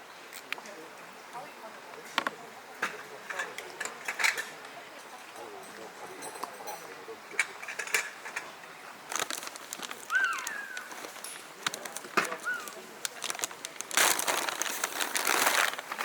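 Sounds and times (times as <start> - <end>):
crinkling rustle: 7.3 - 16.0
short bird calls: 10.1 - 11.0, 12.4 - 12.9.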